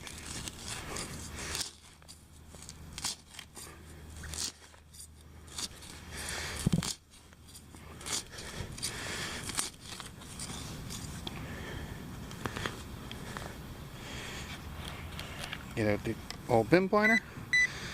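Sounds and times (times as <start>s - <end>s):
digging tool crunching turf: 0.0s - 11.2s.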